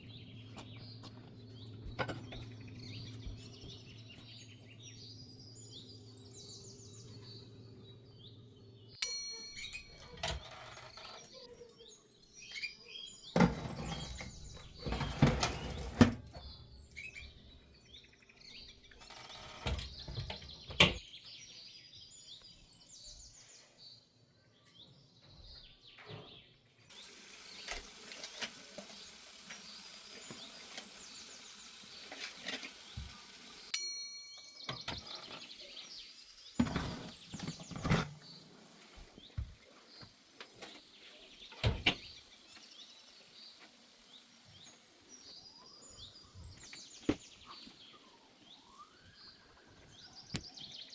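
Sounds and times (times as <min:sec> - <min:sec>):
birds chirping: 0:00.0 - 0:50.9
kitchen clicks and knocks: 0:13.4 - 0:16.4.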